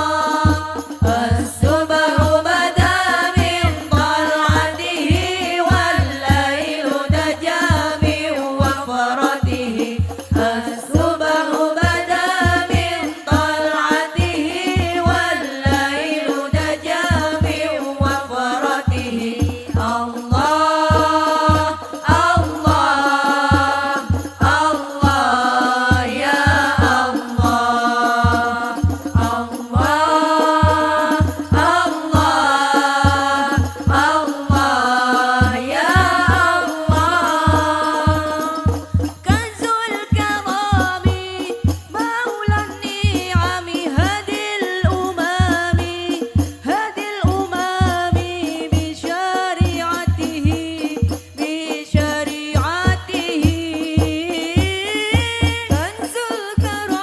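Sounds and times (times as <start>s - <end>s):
frame drum strokes: 0.0s - 44.2s
voices singing: 0.0s - 57.0s.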